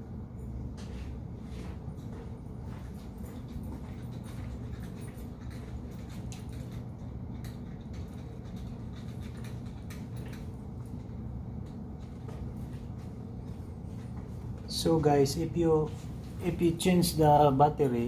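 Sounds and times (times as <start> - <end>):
steady low hum: 0.0 - 18.0
light clicks and scratches: 2.8 - 14.8.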